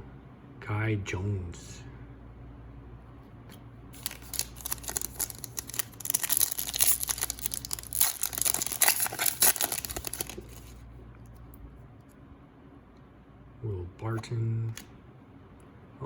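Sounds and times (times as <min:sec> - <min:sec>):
foil wrapper tearing and crinkling: 0:04.0 - 0:10.8.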